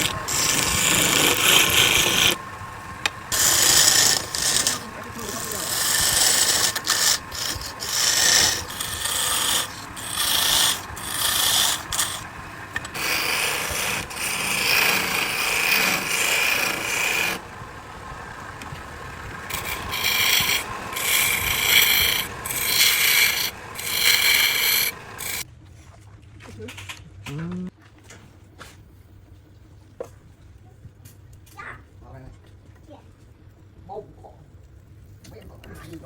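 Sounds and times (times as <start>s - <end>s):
tool rubbing spinning wood: 0.0s - 25.5s.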